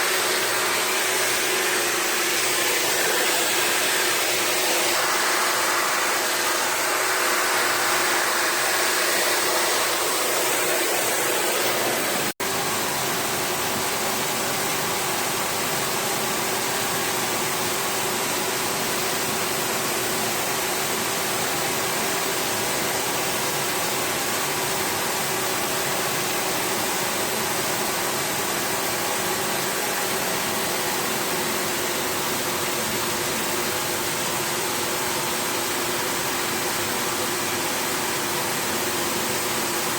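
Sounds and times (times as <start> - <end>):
water spray rinsing coil: 0.0 - 12.4.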